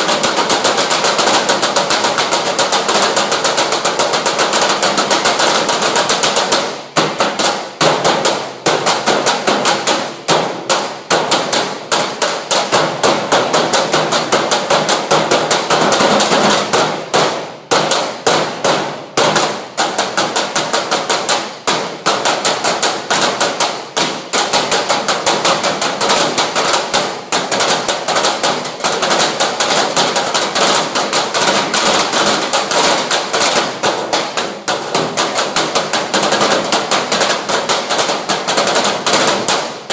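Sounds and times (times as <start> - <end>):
drums played in fast strokes: 0.0 - 39.9.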